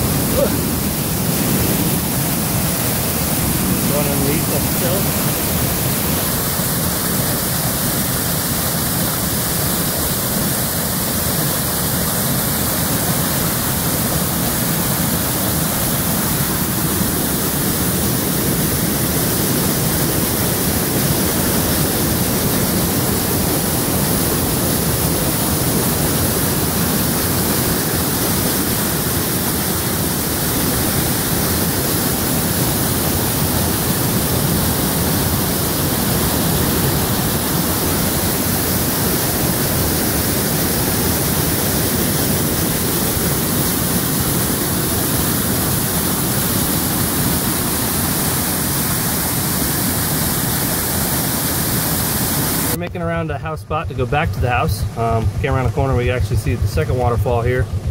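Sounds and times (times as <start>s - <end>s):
waterfall pouring heavily: 0.0s - 52.8s.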